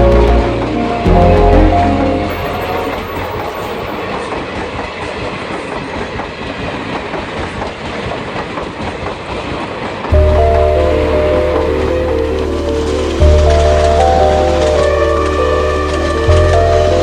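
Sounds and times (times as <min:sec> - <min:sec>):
train rattling on track: 0:03.1 - 0:10.1.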